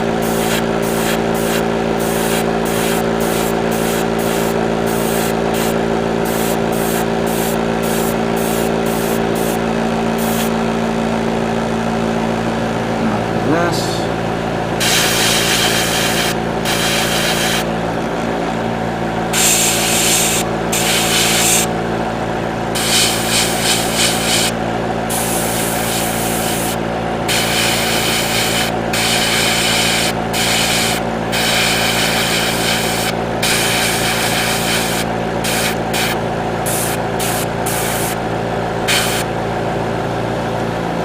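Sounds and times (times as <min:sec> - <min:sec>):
compressor hum: 0:00.0 - 0:41.0
airbrush spraying hiss: 0:00.2 - 0:09.6, 0:10.2 - 0:10.6, 0:14.8 - 0:17.7, 0:19.3 - 0:21.7, 0:22.8 - 0:38.2, 0:38.9 - 0:39.3.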